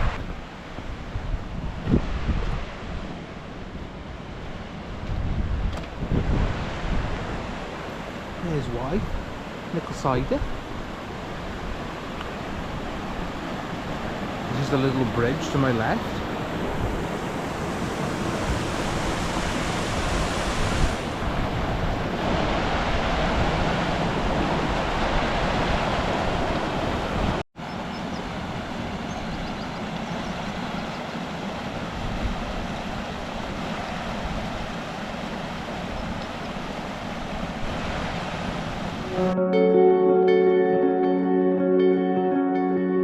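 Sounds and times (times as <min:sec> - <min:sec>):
river rushing: 0:06.2 - 0:39.3
waterfall roaring: 0:06.5 - 0:27.4.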